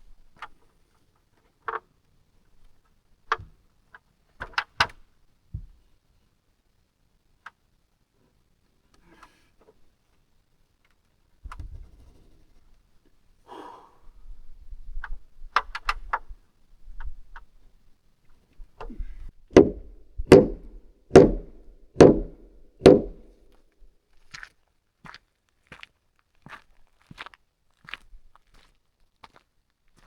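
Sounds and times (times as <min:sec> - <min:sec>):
hammer striking wood: 0:19.5 - 0:23.4.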